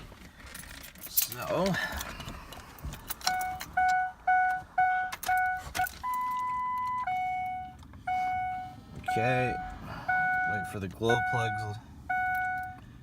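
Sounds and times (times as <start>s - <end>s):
dashboard warning chime beeps: 3.3s - 12.8s.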